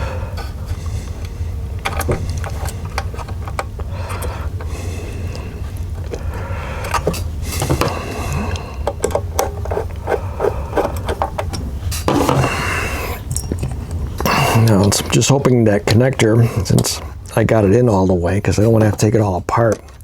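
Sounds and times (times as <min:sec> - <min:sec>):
steady low hum: 0:00.0 - 0:20.0
scraping: 0:09.3 - 0:11.5.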